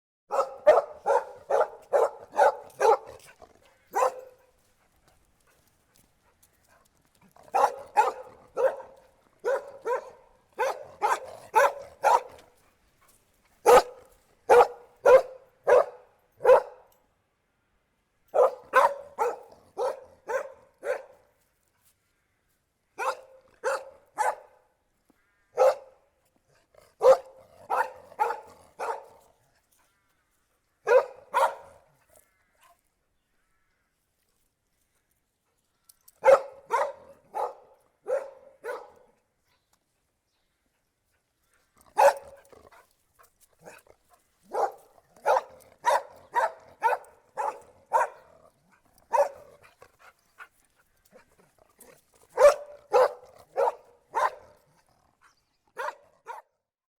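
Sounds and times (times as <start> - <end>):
dog barking: 0.3 - 4.5, 7.4 - 12.4, 13.6 - 16.9, 18.3 - 21.2, 23.0 - 24.7, 25.6 - 26.0, 27.0 - 29.3, 30.8 - 31.8, 36.2 - 39.2, 42.0 - 42.4, 44.5 - 48.4, 49.1 - 49.6, 52.3 - 54.6, 55.8 - 56.6.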